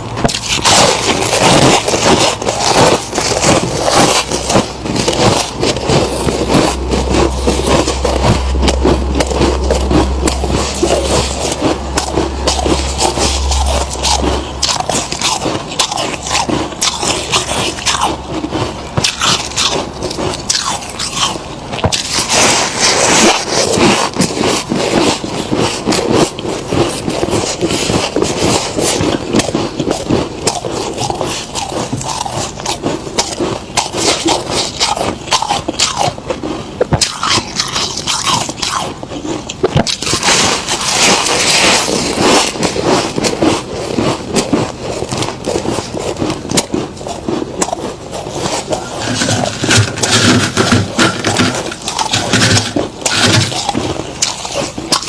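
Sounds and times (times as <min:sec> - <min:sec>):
frost crunching while eaten: 0:00.0 - 0:55.0.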